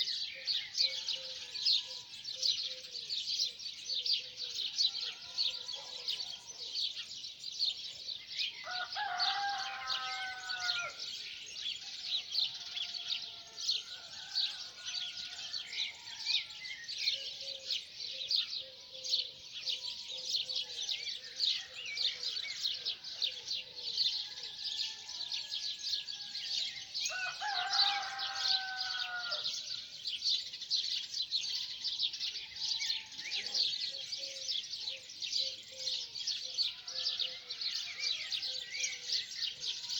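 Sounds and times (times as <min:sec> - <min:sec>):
songbirds chirping: 0:00.0 - 0:39.9
rooster crowing: 0:08.6 - 0:11.0, 0:24.6 - 0:29.6.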